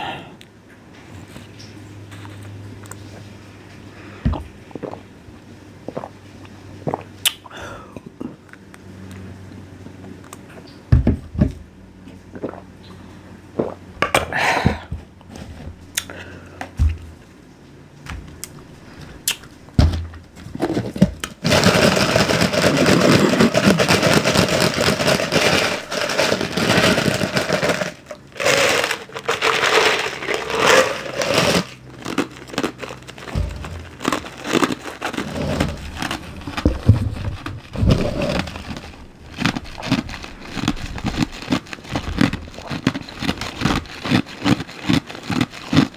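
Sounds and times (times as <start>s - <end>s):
close-up crunching and chewing: 20.5s - 45.9s.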